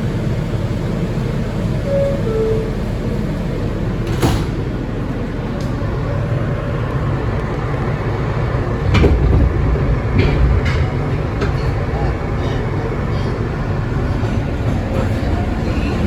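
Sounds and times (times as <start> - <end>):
subway train rumble: 0.0 - 16.0
heavy clunks: 8.7 - 15.2.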